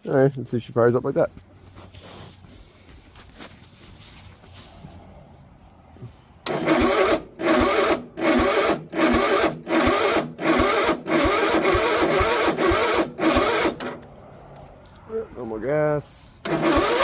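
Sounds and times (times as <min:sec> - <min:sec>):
electric starter cranking engine: 0:06.4 - 0:14.1, 0:16.4 - 0:17.0.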